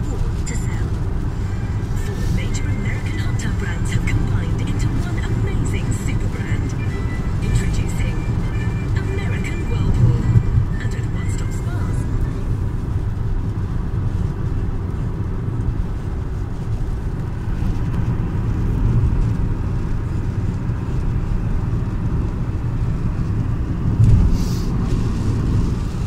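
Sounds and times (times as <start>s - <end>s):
car rumbling on the move: 0.0s - 26.0s
brief hiss: 24.0s - 25.4s.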